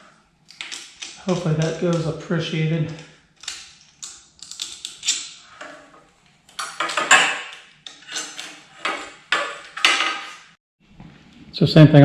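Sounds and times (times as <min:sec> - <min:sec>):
metal parts clinking and rattling: 0:03.4 - 0:05.5, 0:06.6 - 0:10.4.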